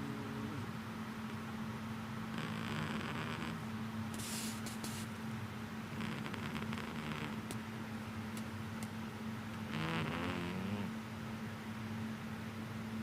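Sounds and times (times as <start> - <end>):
cat snoring: 0.0 - 0.7, 2.3 - 3.6, 5.9 - 7.4, 9.7 - 11.0
steady low hum: 0.0 - 13.0.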